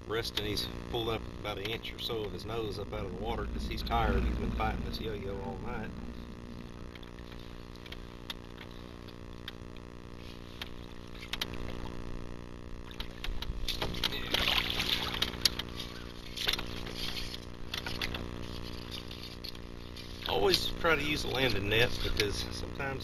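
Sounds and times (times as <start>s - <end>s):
low hum: 0.0s - 22.8s
water splashing and sloshing: 1.6s - 9.6s, 10.2s - 12.1s, 12.8s - 20.7s.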